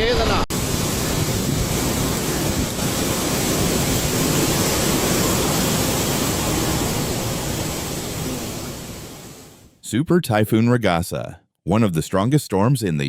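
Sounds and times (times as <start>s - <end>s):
strong wind rushing: 0.0s - 9.7s
churning water: 0.5s - 9.6s.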